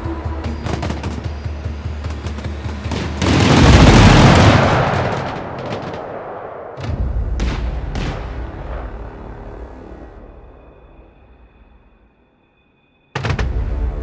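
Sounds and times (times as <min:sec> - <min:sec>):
fireworks sharp bangs: 0:00.5 - 0:10.3
loud firework burst: 0:02.9 - 0:11.4.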